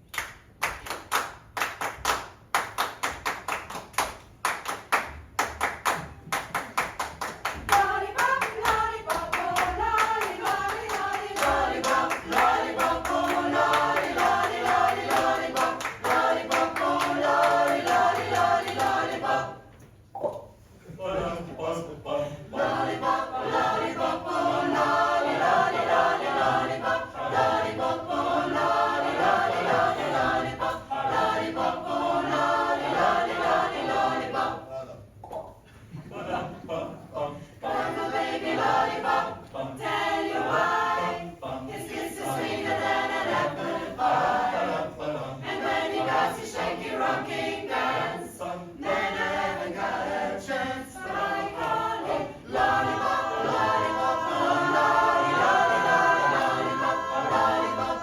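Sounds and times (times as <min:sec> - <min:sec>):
rhythmic handclaps: 0:00.0 - 0:19.6, 0:51.0 - 0:58.0
a cappella group singing: 0:07.2 - 0:20.0, 0:20.6 - 0:58.0.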